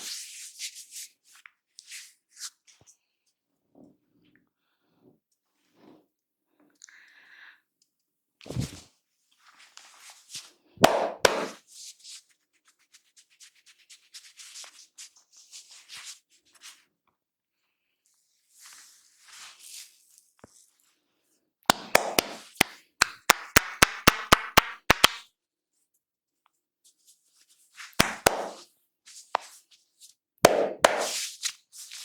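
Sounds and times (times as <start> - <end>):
hands rubbing hair: 10.8 - 11.6, 27.8 - 28.7, 30.5 - 32.0
sharp hand strikes: 10.8 - 11.6, 21.7 - 22.4, 28.0 - 28.6, 30.5 - 31.2.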